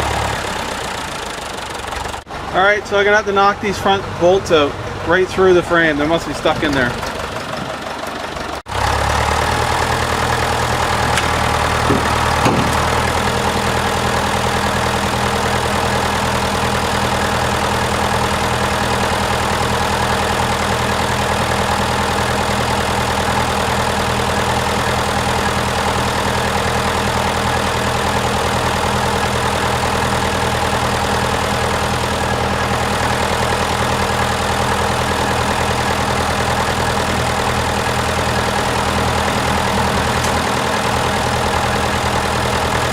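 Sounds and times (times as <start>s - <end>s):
tractor engine idling: 0.0s - 42.9s
short knocks: 11.0s - 13.0s.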